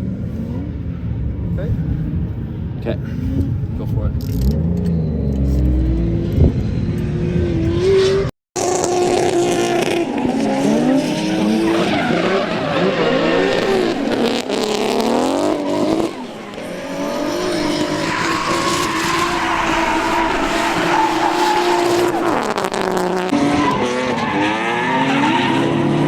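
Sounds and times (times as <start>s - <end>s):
car engine revving: 0.0s - 26.0s
tyre squeal: 15.4s - 25.7s.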